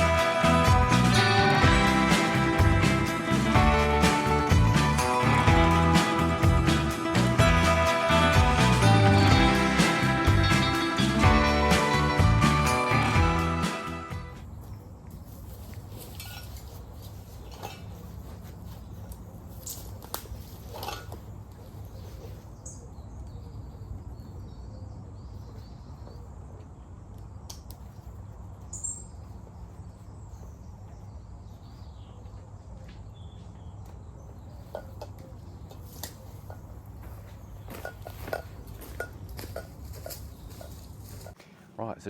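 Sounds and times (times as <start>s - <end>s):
faint birdsong: 14.4s - 42.0s.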